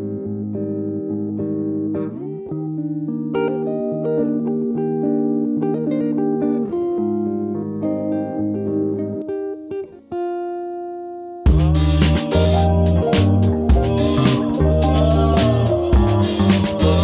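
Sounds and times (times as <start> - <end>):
plucked guitar: 0.0 - 17.0
bass line: 11.5 - 17.0.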